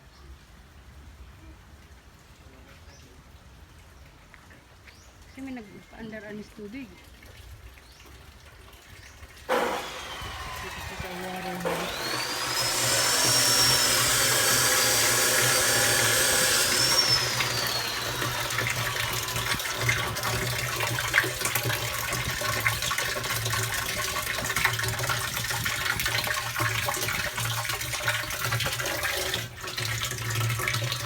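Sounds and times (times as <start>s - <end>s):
water running from a tap: 10.0s - 31.0s.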